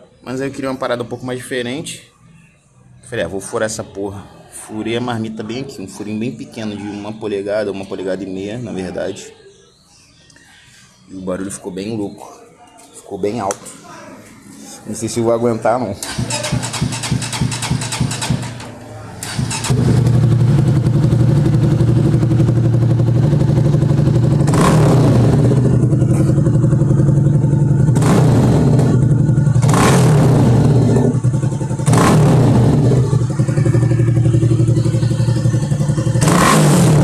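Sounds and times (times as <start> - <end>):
motorcycle engine revving and idling: 16.0 - 37.0.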